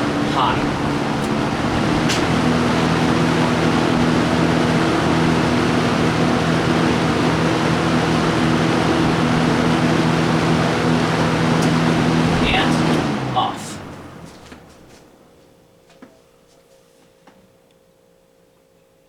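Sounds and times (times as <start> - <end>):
box fan running: 0.0 - 18.0.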